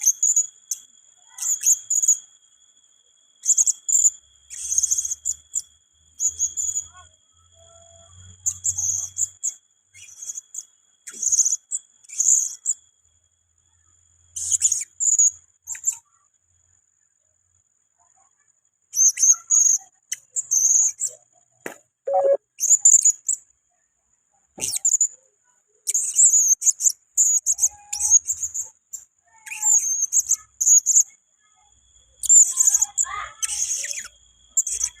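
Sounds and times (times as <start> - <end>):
parrot high-pitched chirps: 22.1 - 23.1, 29.4 - 31.0, 32.2 - 35.0.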